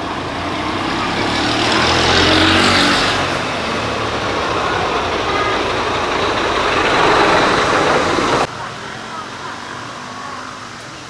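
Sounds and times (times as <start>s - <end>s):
vehicle engine running: 0.0s - 8.5s
road and wind noise: 0.0s - 8.8s.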